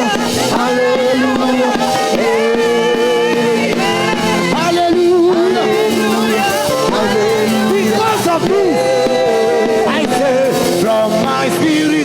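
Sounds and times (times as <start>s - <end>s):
person singing: 0.0s - 12.0s.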